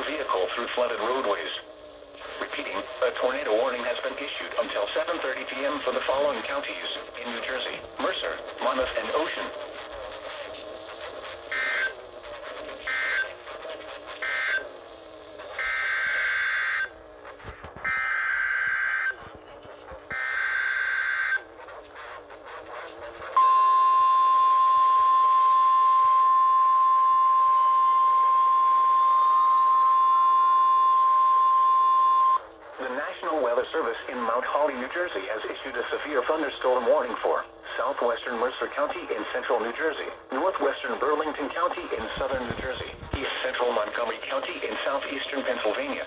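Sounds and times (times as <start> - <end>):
data tone bursts: 0.0 - 34.9, 40.7 - 46.0
steady single-pitch alarm tone: 8.4 - 22.6, 23.3 - 32.5.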